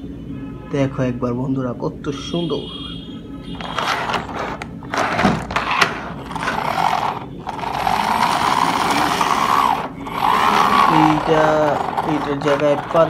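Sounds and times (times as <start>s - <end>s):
toy wheels and gears whirring: 3.6s - 13.0s.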